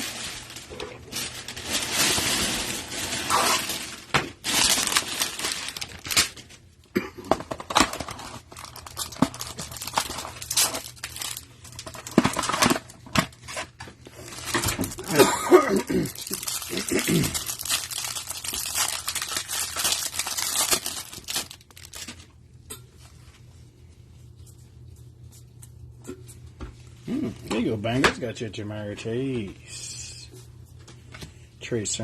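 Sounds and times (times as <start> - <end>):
packaging crinkling and rustling: 0.0 - 22.4.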